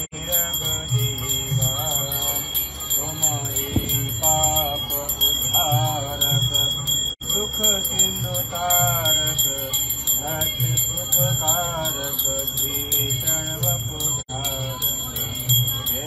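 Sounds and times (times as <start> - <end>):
hand bell rung rapidly: 0.0 - 16.0
voices singing: 0.0 - 16.0
low pulsing beat: 0.2 - 9.6.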